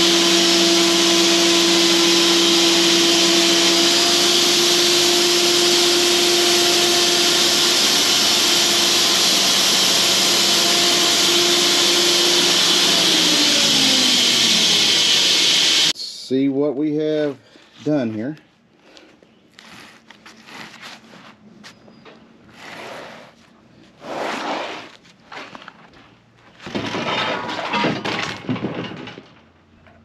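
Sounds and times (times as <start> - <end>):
band sawmill whining: 0.0 - 16.0.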